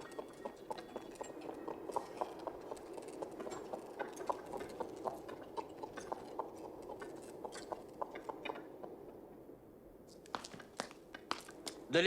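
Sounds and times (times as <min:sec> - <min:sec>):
horse hooves clip-clopping: 0:00.0 - 0:09.3, 0:10.1 - 0:12.0
cab wheels rumbling: 0:00.0 - 0:09.5.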